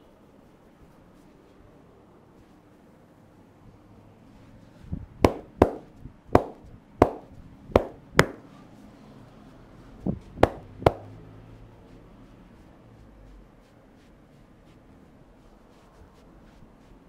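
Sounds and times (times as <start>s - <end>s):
hands slapping in massage: 5.2s - 8.5s, 10.3s - 11.2s.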